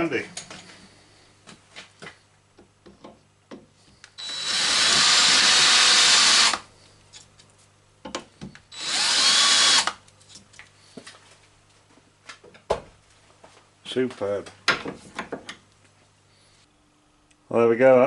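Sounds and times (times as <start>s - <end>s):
small power tool whining: 4.2s - 6.6s, 8.7s - 10.0s.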